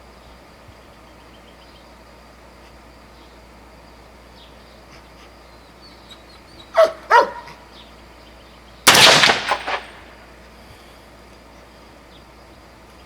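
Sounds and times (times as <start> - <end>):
dog barking: 6.7 - 7.6.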